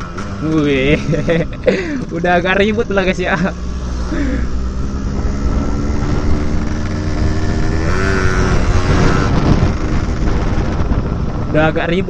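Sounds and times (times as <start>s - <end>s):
motorcycle two-stroke engine running: 0.0s - 10.9s
wind on microphone: 4.6s - 12.0s.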